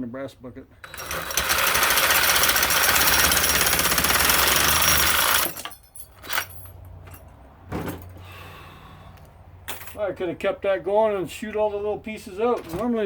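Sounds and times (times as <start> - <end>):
power saw cutting: 0.8 - 5.6.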